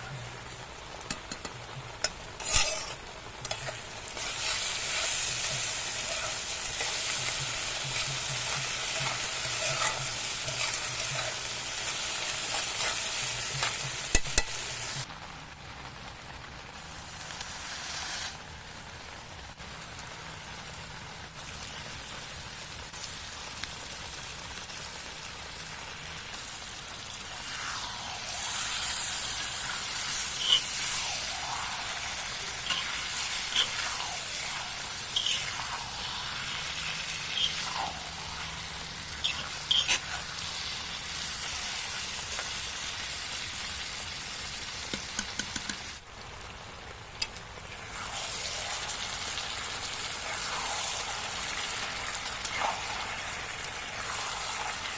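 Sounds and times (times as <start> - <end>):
pork sizzling in a pan: 0.0 - 15.3, 16.7 - 54.9
spatula scraping a pan: 2.0 - 15.0, 28.2 - 38.6, 39.2 - 40.7.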